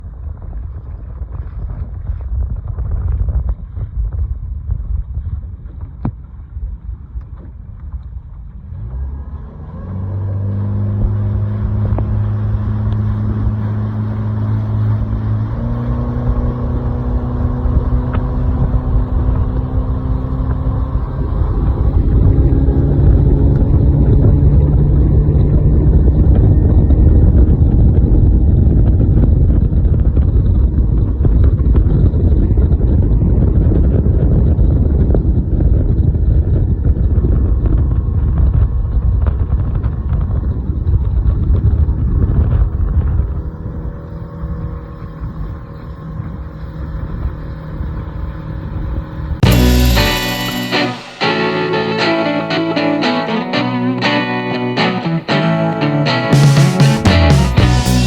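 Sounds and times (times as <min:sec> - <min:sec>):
wind buffeting microphone: 0:00.0 - 0:08.6.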